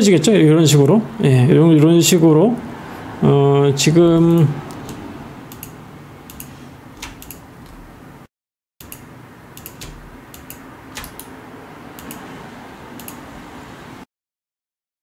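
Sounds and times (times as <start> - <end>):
mouse and keyboard clicks: 4.4 - 7.8, 8.8 - 11.3, 12.0 - 12.3.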